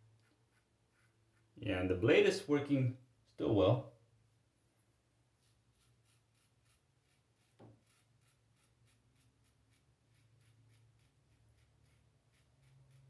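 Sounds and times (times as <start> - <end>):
razor scraping stubble: 0.2 - 1.6, 5.4 - 13.0.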